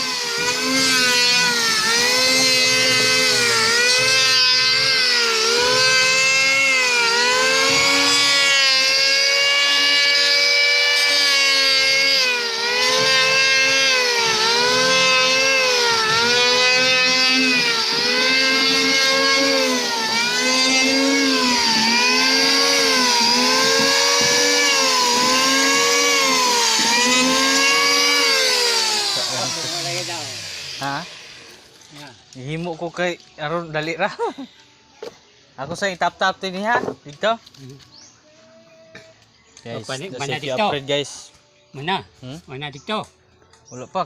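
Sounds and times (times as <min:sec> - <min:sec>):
power tool motor whining: 0:00.0 - 0:33.3.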